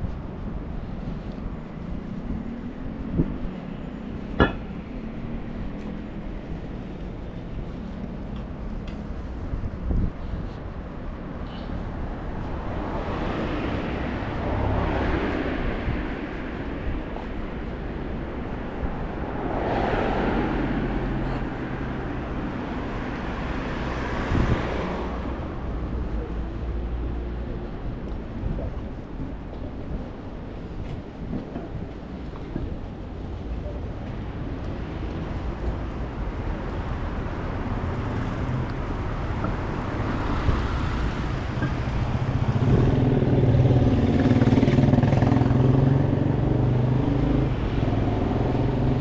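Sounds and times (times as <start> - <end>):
passing traffic: 0.0 - 49.0
vehicle passing: 17.8 - 25.9, 37.2 - 49.0.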